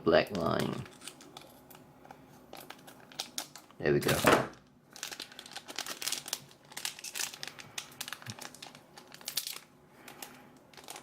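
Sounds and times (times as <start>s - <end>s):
foil wrapper crinkling: 0.3s - 11.0s.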